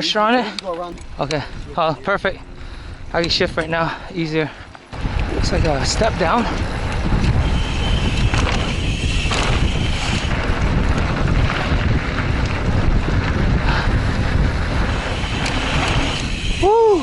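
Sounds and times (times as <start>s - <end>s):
wind rushing over microphone: 0.7s - 17.0s
tyres rolling on dirt: 3.2s - 17.0s
bike knocks and rattles: 5.0s - 16.7s.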